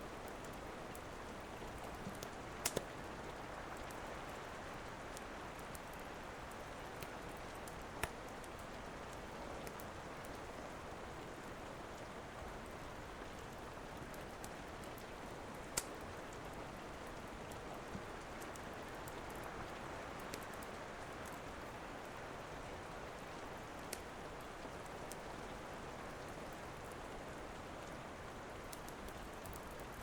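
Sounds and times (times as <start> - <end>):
steady rain falling: 0.0 - 30.0
wood fire crackling and popping: 0.2 - 3.1, 5.1 - 10.4, 13.3 - 22.2, 23.1 - 25.2, 28.6 - 30.0.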